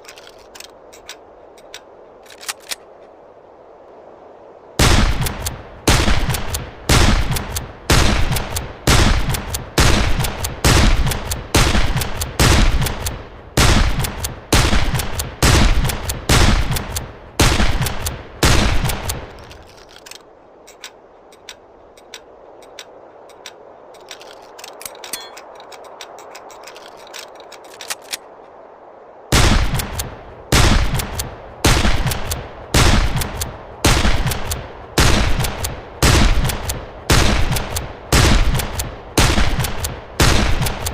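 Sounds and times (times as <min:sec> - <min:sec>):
rifle shots: 0:04.8 - 0:19.3, 0:29.3 - 0:40.9
soft clicks: 0:18.8 - 0:28.3, 0:33.1 - 0:33.6.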